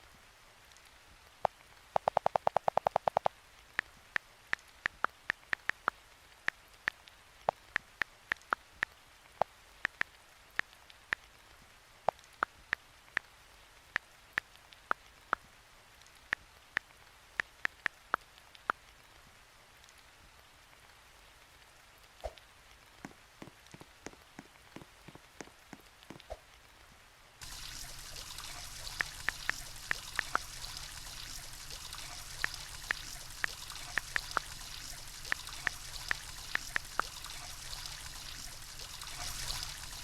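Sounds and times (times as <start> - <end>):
sharp ticks with high ping: 2.0 - 3.3.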